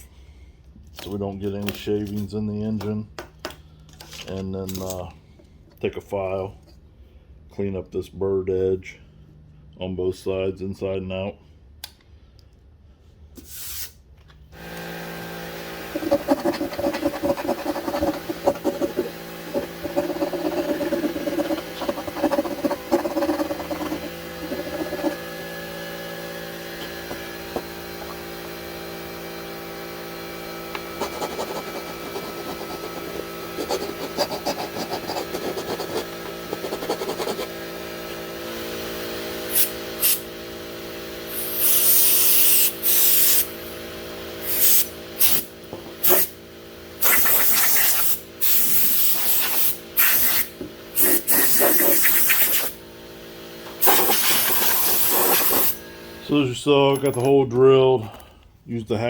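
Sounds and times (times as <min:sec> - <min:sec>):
compressed air blast: 0:13.4 - 0:14.0, 0:39.5 - 0:40.3, 0:41.3 - 0:43.5, 0:44.4 - 0:46.3, 0:47.0 - 0:52.8, 0:53.8 - 0:55.8
short air hisses: 0:13.4 - 0:14.0, 0:44.4 - 0:45.4, 0:53.8 - 0:55.8
steady machine hum: 0:14.5 - 0:47.3, 0:49.8 - 0:59.0
file rasping on metal: 0:15.9 - 0:25.4, 0:30.8 - 0:37.6, 0:51.1 - 0:52.7.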